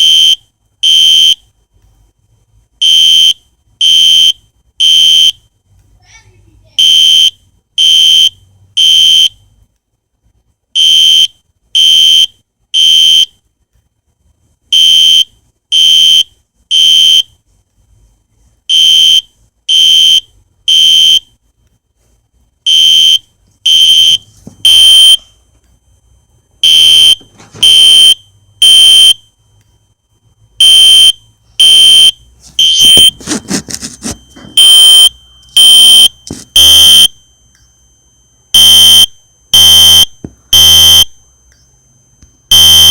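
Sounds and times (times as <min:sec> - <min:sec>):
fire alarm beeping: 0:18.7 - 0:21.2, 0:22.6 - 0:42.9.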